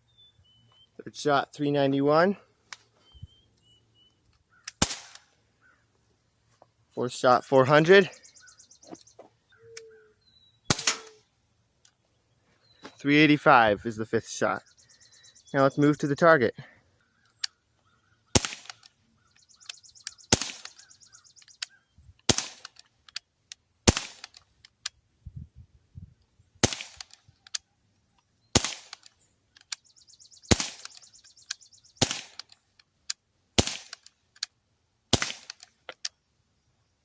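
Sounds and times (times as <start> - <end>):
air pistol shots cracking: 4.7 - 5.4, 10.7 - 11.2, 18.3 - 19.0, 19.7 - 21.7, 22.3 - 22.8, 23.9 - 24.5, 26.6 - 27.3, 28.5 - 29.2, 30.4 - 32.6, 33.6 - 34.1, 35.1 - 35.8.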